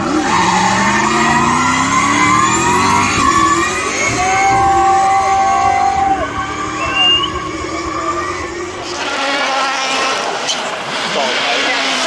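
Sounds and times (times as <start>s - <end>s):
tyre squeal: 0.0s - 9.8s
racing car engine high revs: 0.0s - 12.0s
tyre hiss and squeal: 0.3s - 9.0s.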